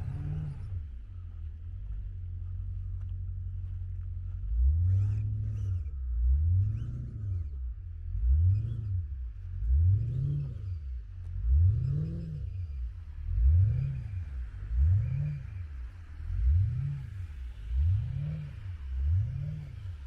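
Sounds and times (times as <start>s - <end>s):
engine idling: 0.0s - 8.4s
car engine revving: 0.0s - 20.0s.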